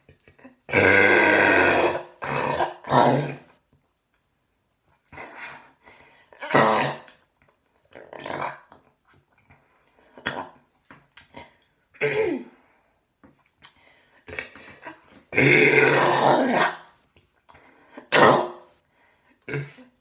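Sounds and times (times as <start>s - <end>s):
woman belching loudly: 0.7s - 3.4s, 15.3s - 16.8s.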